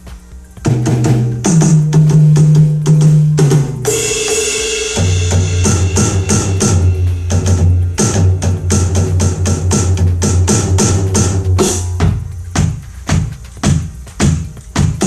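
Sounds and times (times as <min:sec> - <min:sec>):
electronic drum groove: 0:00.0 - 0:15.0
cymbal crash: 0:03.5 - 0:12.8.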